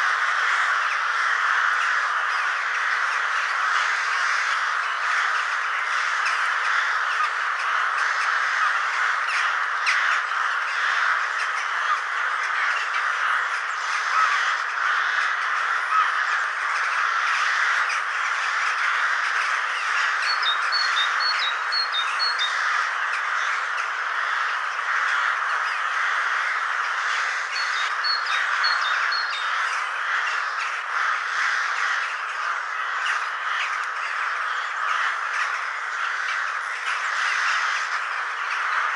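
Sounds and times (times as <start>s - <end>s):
chorus of birds: 0.0s - 38.9s
ravens calling: 0.0s - 38.9s
small bird high chirps: 19.9s - 22.8s, 27.2s - 30.4s.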